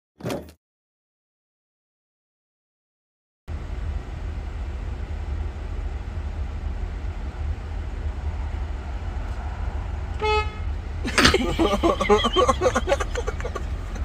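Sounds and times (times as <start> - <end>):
road noise: 3.5 - 14.0
vehicle engine rumble: 3.5 - 14.0.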